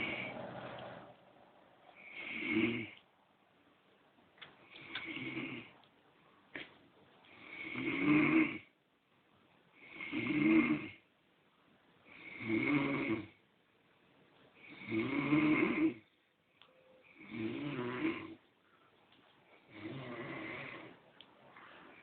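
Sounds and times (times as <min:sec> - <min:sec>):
man snoring: 0:00.0 - 0:01.1, 0:02.0 - 0:03.0, 0:04.9 - 0:05.7, 0:07.4 - 0:08.7, 0:09.8 - 0:11.0, 0:12.1 - 0:13.4, 0:14.6 - 0:16.0, 0:17.2 - 0:18.4, 0:19.7 - 0:21.0
quiet breaths: 0:00.0 - 0:22.0.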